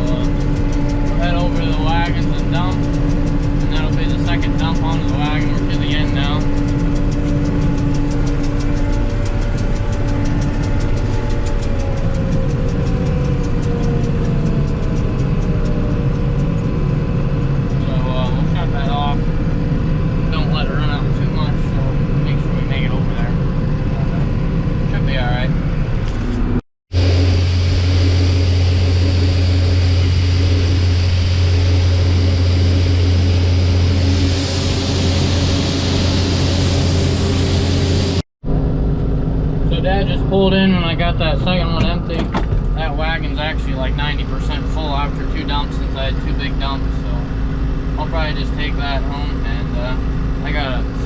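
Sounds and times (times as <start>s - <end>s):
fast even ticking: 0.0s - 19.2s
combine engine rumble: 0.0s - 51.0s.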